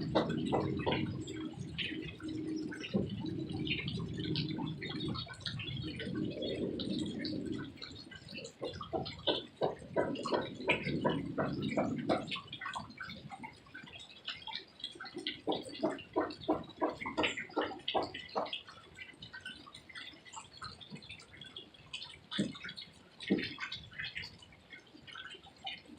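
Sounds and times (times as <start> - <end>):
heavy rain: 0.0 - 19.1
water dripping and splashing: 0.0 - 25.9.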